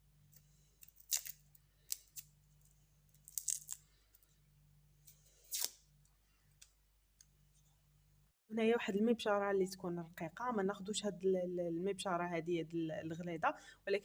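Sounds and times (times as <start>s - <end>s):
garlic skin crackling and tearing: 0.8s - 2.3s, 3.1s - 3.9s, 5.5s - 5.8s.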